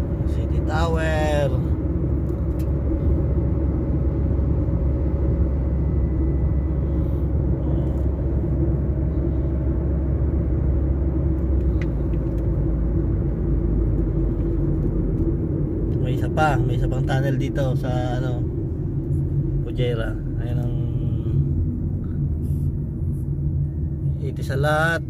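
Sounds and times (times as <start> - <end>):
car engine and tyre rumble: 0.0 - 25.0.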